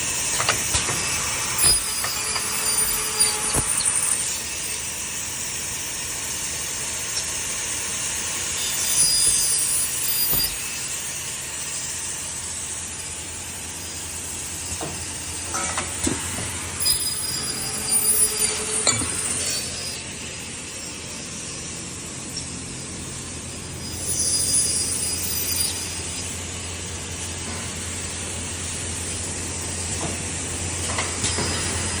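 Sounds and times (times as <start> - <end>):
machine humming: 0.0 - 15.5
high-pitched machine whine: 0.0 - 32.0.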